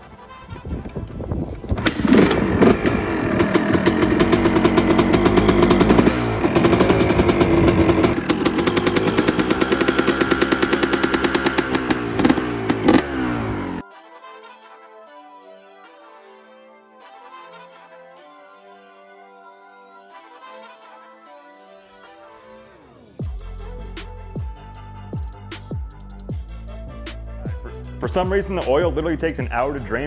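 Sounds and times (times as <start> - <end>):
two-stroke engine revving and idling: 1.8 - 13.8.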